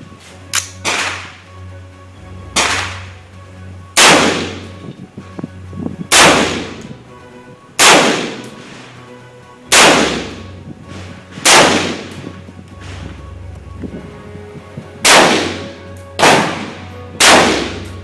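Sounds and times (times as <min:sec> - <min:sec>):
gunshots with short echo: 0:00.6 - 0:01.4, 0:02.6 - 0:03.1, 0:04.0 - 0:04.7, 0:06.1 - 0:06.9, 0:07.8 - 0:08.8, 0:09.7 - 0:10.4, 0:11.4 - 0:12.3, 0:15.0 - 0:18.0.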